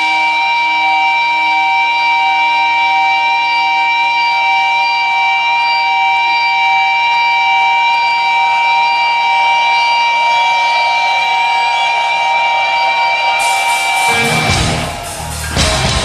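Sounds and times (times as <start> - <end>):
electric guitar feedback: 0.0 - 16.0.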